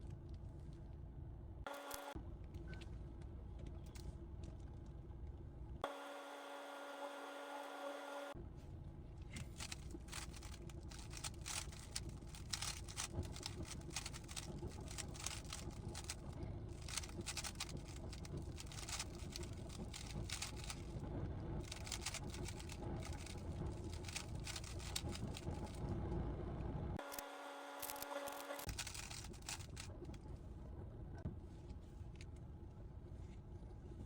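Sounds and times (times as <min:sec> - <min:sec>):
plastic puzzle cube clicking: 0:09.6 - 0:16.2, 0:16.8 - 0:20.8, 0:24.0 - 0:25.7.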